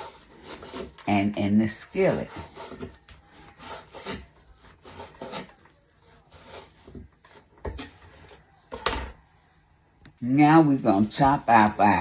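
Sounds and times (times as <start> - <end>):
knife cutting on cutting board: 2.2 - 7.9.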